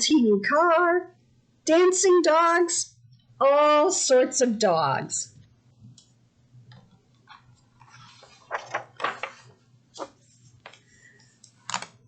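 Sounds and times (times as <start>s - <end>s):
book pages rustling: 6.8s - 10.9s.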